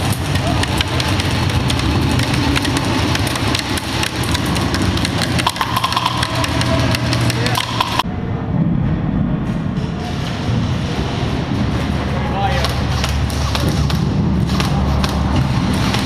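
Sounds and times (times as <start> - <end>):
airsoft guns firing: 0.0 - 8.0.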